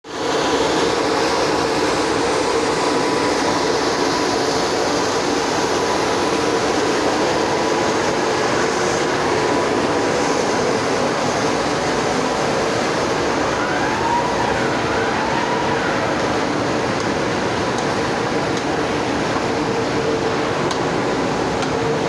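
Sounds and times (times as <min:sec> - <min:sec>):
machinery running: 0:00.1 - 0:22.0.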